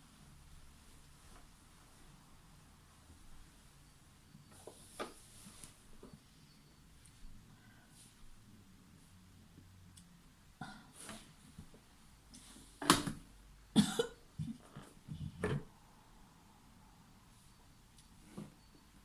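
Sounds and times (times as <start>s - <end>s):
woman coughing: 13.8s - 14.6s.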